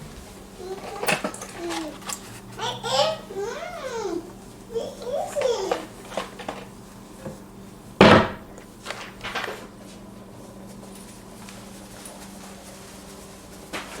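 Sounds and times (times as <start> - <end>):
knocks: 8.0 - 8.6.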